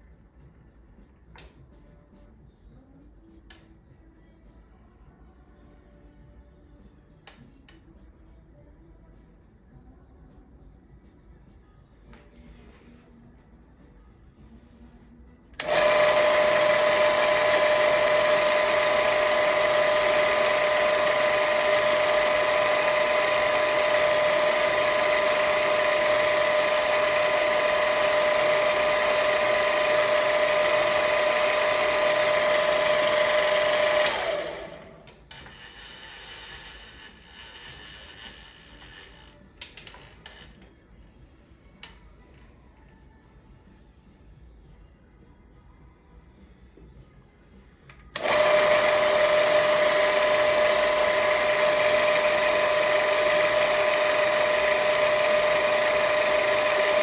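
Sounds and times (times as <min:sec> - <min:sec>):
milling machine motor whine: 0:15.6 - 0:39.4, 0:48.2 - 0:57.0.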